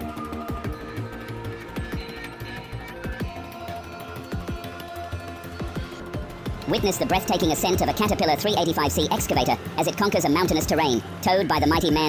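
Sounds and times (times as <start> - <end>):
electronic music with beat: 5.6 - 12.0.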